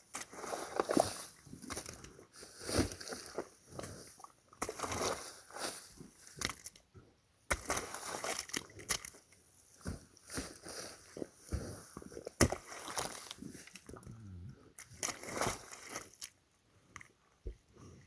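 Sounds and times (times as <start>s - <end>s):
wet sloshing and squelching: 12.2s - 13.9s.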